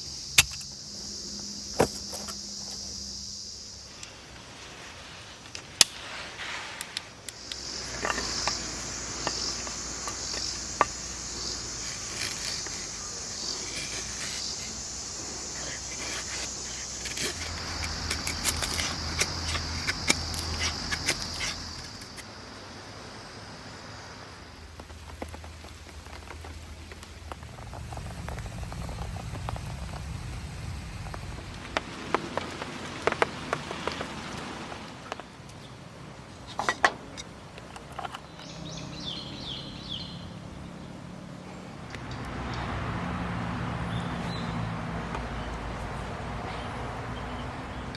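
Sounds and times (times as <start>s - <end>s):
crickets chirring: 0.0s - 47.9s
sharp ticks: 0.1s - 3.0s, 6.9s - 22.2s
rain pattering on a tarp: 24.2s - 36.3s.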